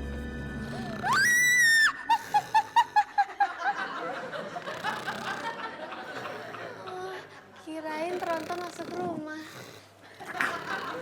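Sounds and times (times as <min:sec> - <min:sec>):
high snickering laughter: 0:00.8 - 0:07.4, 0:10.2 - 0:11.0.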